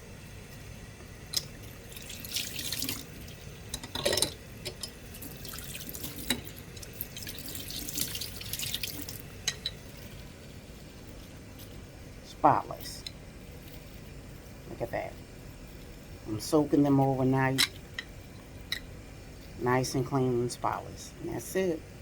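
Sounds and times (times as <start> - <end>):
tap water splashing in sink: 1.9 - 3.1, 5.2 - 9.2.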